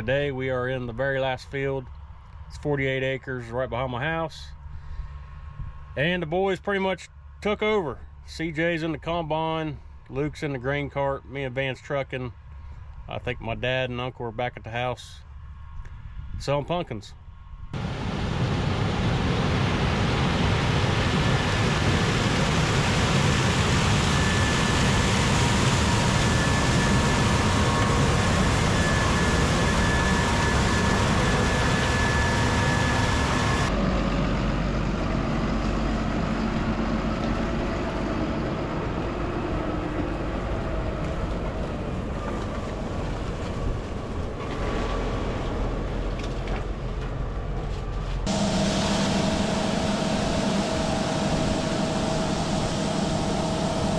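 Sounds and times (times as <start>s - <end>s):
faint high whine: 0.0s - 53.9s
heavy machinery running: 17.8s - 53.9s.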